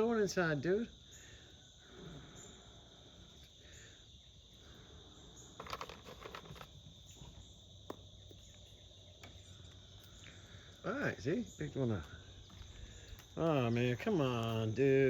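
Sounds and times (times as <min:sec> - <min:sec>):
crickets chirring: 0:00.0 - 0:15.0
rustling clicks: 0:05.6 - 0:06.8.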